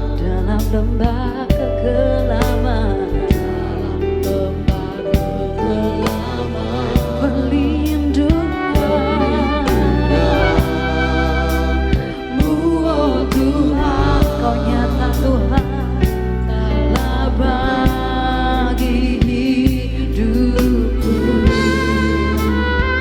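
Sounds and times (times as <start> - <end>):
bass: 0.0 - 23.0
people singing: 0.0 - 23.0.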